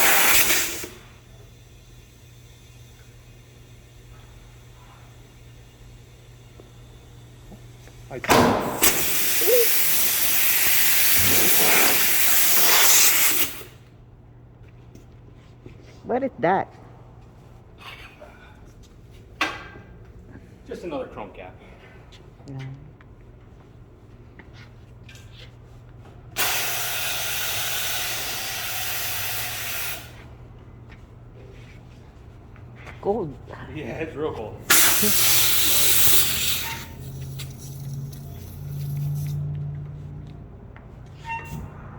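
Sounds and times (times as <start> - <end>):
compressed air hissing: 0.0 - 13.8, 26.4 - 30.2, 34.7 - 39.4.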